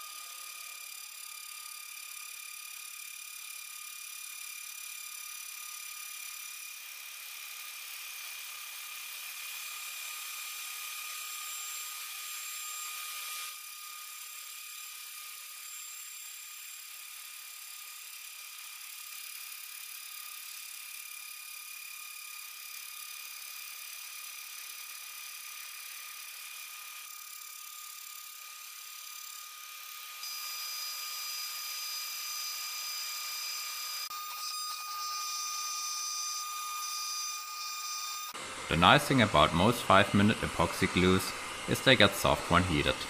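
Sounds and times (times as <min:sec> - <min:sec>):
milling spindle whine: 0:00.0 - 0:43.0
cutting hiss: 0:38.3 - 0:43.0.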